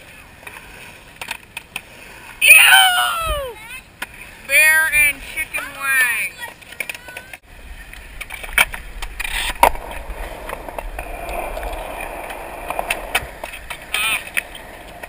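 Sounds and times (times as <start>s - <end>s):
skateboard clacks: 0.0s - 2.4s, 5.5s - 15.0s
skateboard wheels rolling on concrete: 0.0s - 15.0s.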